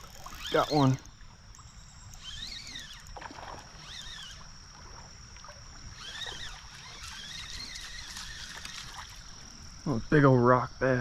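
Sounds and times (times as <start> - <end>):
water rumbling: 0.0 - 10.2
high insect drone: 0.0 - 11.0
wind: 0.0 - 11.0.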